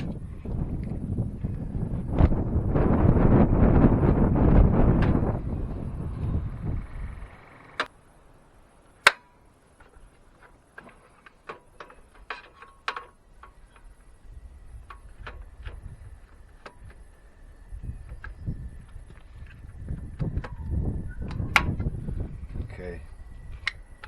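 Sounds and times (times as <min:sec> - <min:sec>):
wind rumble on microphone: 0:00.0 - 0:07.9, 0:13.5 - 0:24.0.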